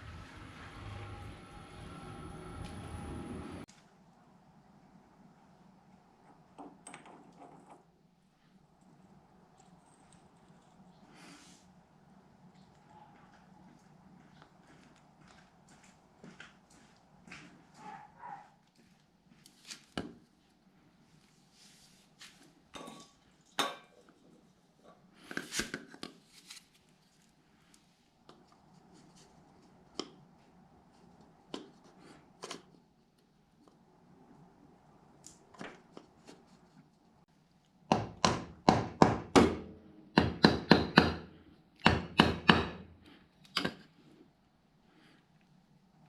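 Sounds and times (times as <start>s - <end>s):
tools clinking and knocking: 22.7s - 24.2s.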